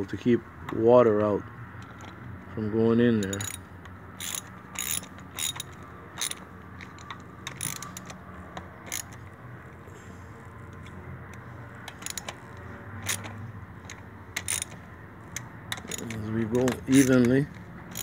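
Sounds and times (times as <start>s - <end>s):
hand ratchet clicking: 3.2s - 3.6s, 4.2s - 8.2s, 8.9s - 9.2s, 11.8s - 18.0s.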